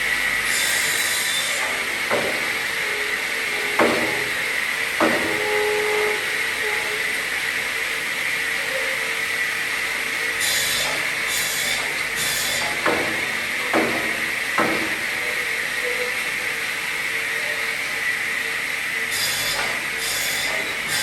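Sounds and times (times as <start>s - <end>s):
circular saw whine and hum: 0.0s - 21.0s
sharp wooden knocks: 2.1s - 2.5s, 3.8s - 4.3s, 5.0s - 5.4s, 12.6s - 15.0s.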